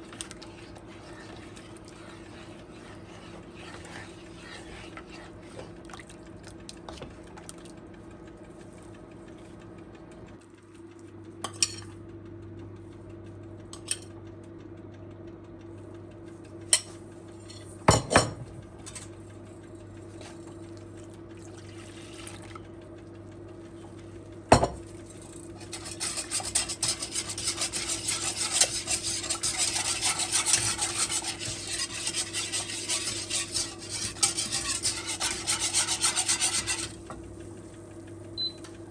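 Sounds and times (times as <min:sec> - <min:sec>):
utensil scraping around a pot: 0:00.0 - 0:05.8, 0:24.9 - 0:37.0
low appliance hum: 0:00.0 - 0:38.9.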